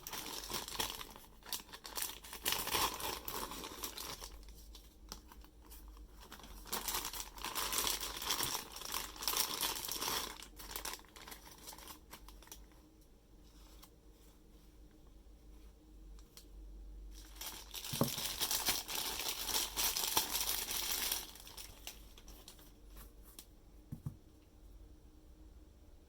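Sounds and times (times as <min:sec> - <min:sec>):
packaging crinkling: 0:00.0 - 0:12.7, 0:17.1 - 0:22.9.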